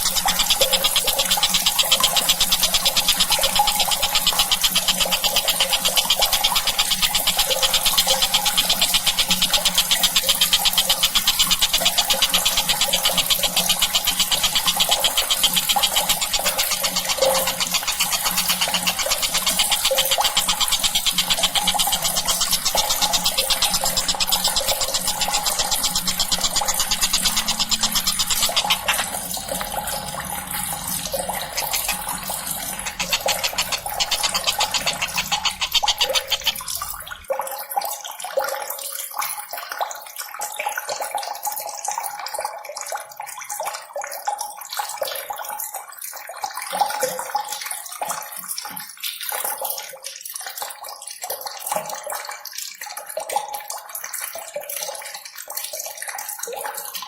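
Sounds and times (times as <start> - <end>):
bird chattering and trilling: 0.0 - 37.2.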